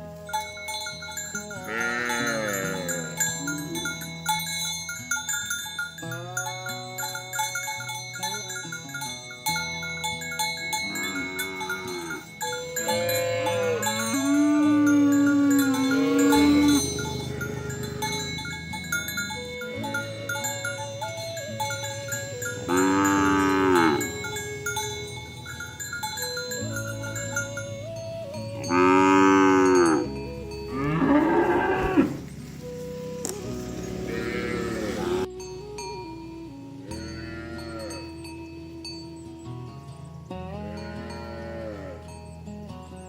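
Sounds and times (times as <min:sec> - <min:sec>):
bell-like ringing: 0:00.0 - 0:39.6
cattle mooing: 0:01.6 - 0:04.0, 0:10.6 - 0:25.8, 0:28.5 - 0:35.3, 0:37.0 - 0:38.0, 0:40.5 - 0:42.1.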